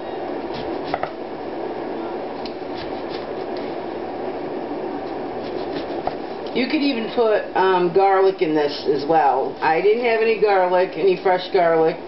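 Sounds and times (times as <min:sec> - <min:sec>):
coffee maker whirring hiss: 0:00.0 - 0:06.7
knife slicing on cutting board: 0:02.7 - 0:03.6, 0:05.4 - 0:06.2.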